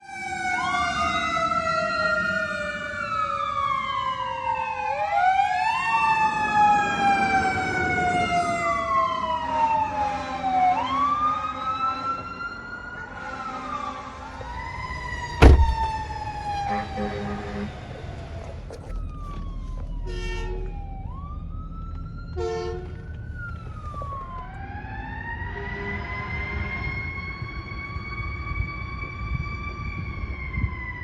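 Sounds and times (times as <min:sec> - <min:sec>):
sirens wailing: 0:00.0 - 0:31.0
loud thump: 0:15.3 - 0:16.1.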